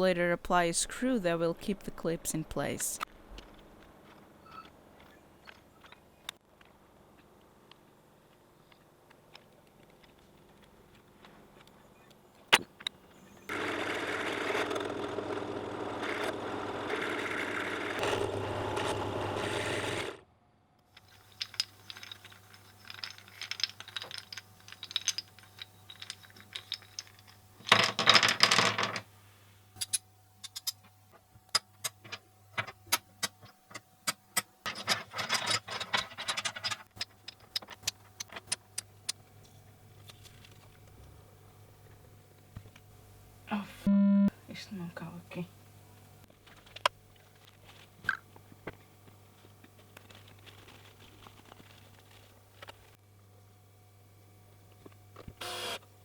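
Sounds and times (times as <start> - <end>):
electric drill boring into wood: 13.5 - 20.2, 55.4 - 55.8
wooden pieces clicking and clattering: 20.9 - 29.0, 31.6 - 39.2.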